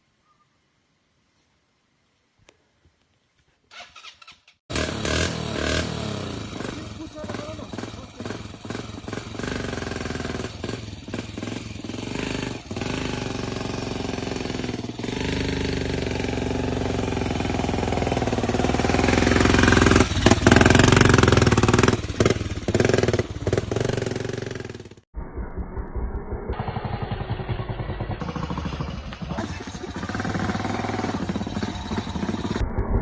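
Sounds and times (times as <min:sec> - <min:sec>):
motorcycle engine under load: 0:03.7 - 0:33.0
wind and road noise: 0:08.4 - 0:33.0.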